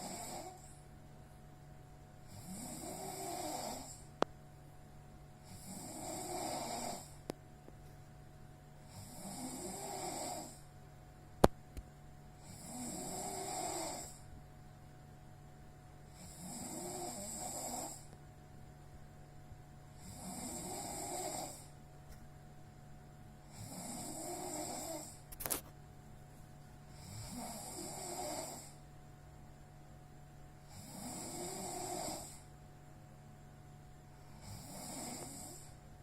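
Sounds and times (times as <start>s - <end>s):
person snoring: 0.0s - 0.8s, 2.2s - 4.2s, 5.4s - 7.3s, 8.8s - 10.6s, 12.4s - 14.3s, 16.1s - 18.1s, 19.9s - 21.8s, 23.4s - 25.6s, 26.9s - 28.8s, 30.6s - 32.5s, 34.2s - 35.8s.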